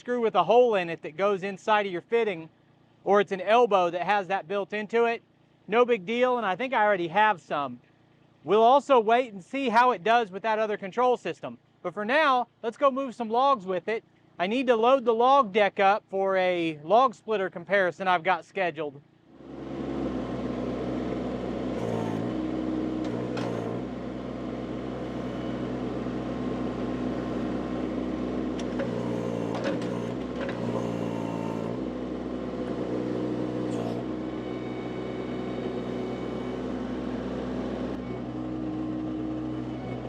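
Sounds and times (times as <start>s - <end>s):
skid steer engine running: 19.0s - 40.0s.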